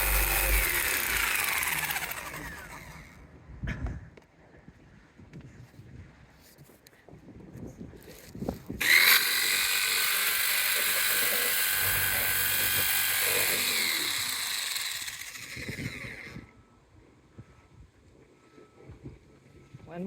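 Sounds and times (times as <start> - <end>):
electric jigsaw cutting: 0.0 - 3.2, 8.8 - 16.4.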